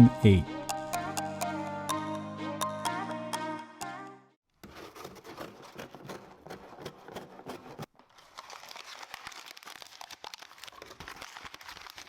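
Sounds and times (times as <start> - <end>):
packaging crinkling and rustling: 7.2 - 12.0.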